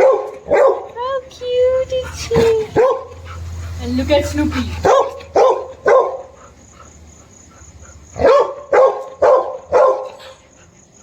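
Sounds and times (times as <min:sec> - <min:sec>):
dog barking: 0:00.0 - 0:01.0, 0:02.2 - 0:03.4, 0:04.6 - 0:06.6, 0:08.1 - 0:10.4.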